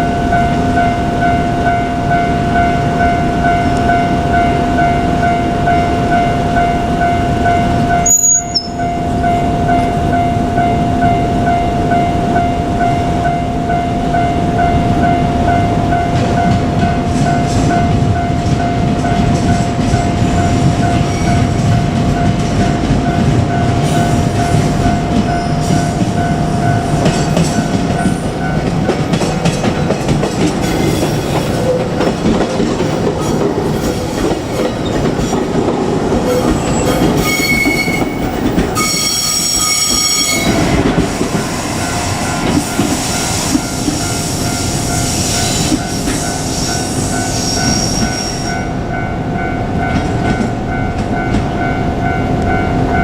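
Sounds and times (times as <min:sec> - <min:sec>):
crossing warning bell ringing: 0:00.0 - 0:53.0
shrill pitched tone: 0:08.0 - 0:08.9
train wheels clattering on rails: 0:14.1 - 0:48.7, 0:49.4 - 0:53.0.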